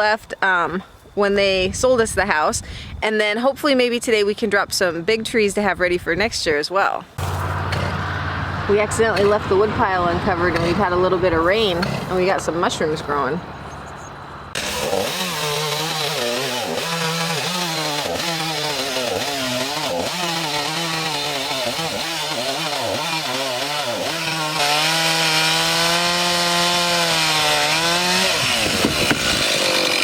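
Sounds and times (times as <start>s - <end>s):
chainsaw cutting logs: 7.2s - 13.0s, 14.5s - 30.0s.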